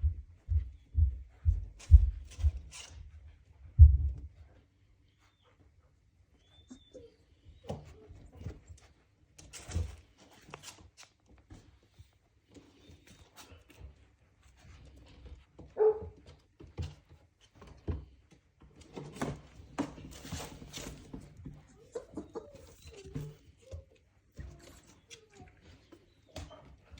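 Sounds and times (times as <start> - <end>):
puppies scuffling and thumping: 0.0 - 26.9
puppy crying: 21.7 - 23.4.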